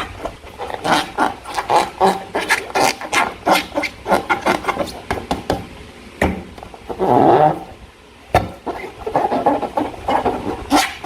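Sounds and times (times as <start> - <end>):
slime squelch: 0.0 - 5.1.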